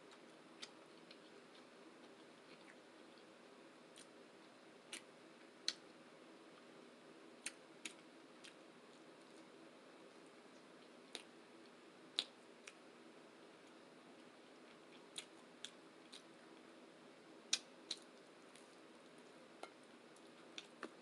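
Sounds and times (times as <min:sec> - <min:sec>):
faint steady hum: 0:00.0 - 0:21.0
mouth clicks and smacks chewing: 0:12.1 - 0:12.8.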